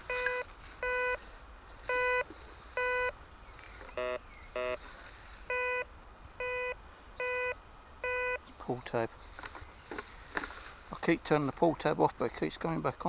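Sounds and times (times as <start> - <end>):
metal detector beeps: 0.0 - 1.2, 1.9 - 2.2, 2.8 - 3.1, 4.0 - 4.8, 5.5 - 8.4
lower buzzy detector tones: 3.9 - 4.8, 5.5 - 8.4.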